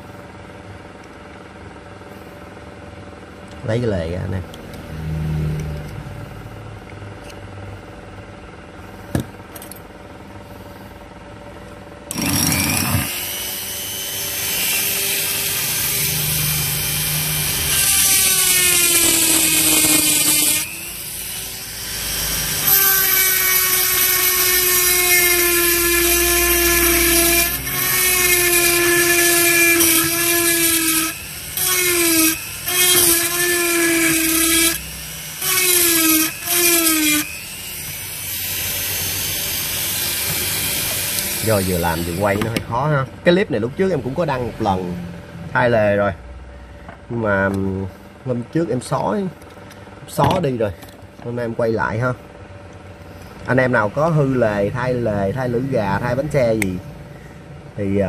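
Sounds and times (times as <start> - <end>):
small electric drill whining: 12.1 - 42.4.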